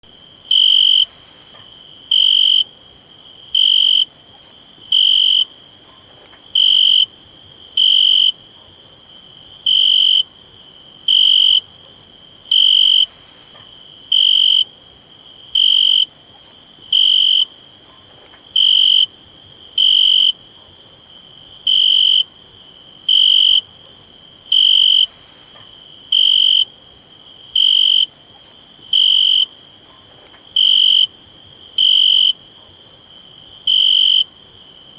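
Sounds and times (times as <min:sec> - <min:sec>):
cricket chirping: 0:00.0 - 0:34.9
steady high-pitched hiss: 0:00.1 - 0:34.9.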